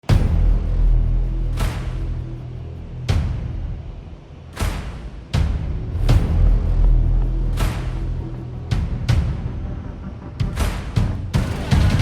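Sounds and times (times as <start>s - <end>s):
heavy percussion hits: 3.0s - 12.0s.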